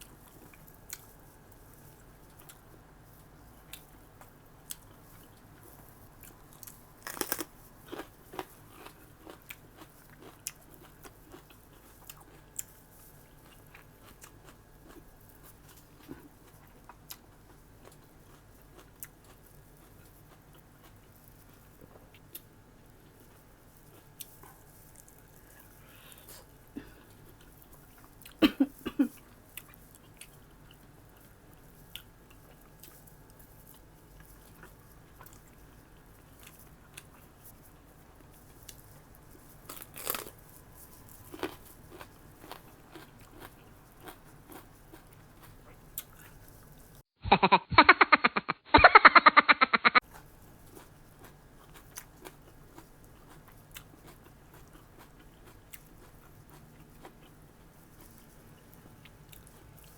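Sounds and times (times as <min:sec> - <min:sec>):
wet chewing sounds: 0:00.0 - 0:28.4, 0:29.1 - 0:47.0, 0:50.0 - 0:59.9.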